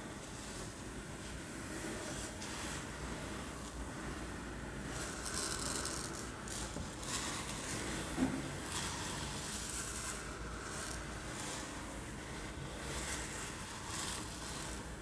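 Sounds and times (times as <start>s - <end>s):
rice grains rattling and sliding: 4.8s - 15.0s.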